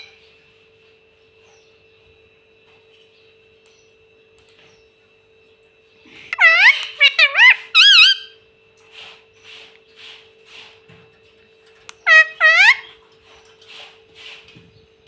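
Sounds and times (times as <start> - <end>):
parakeet calling: 6.3 - 8.4, 11.9 - 13.0.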